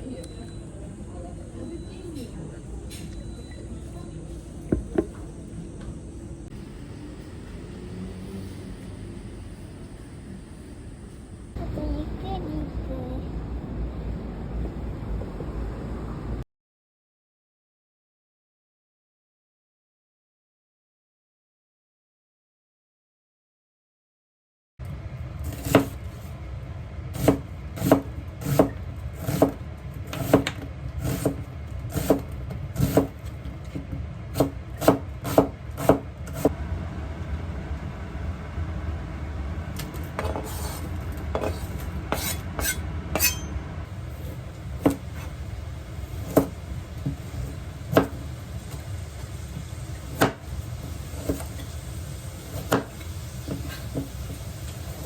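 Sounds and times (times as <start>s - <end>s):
knife chopping on wooden board: 27.2s - 36.5s, 40.2s - 43.5s, 44.8s - 45.3s, 46.2s - 47.2s, 47.9s - 48.2s, 50.1s - 50.4s, 52.5s - 54.1s.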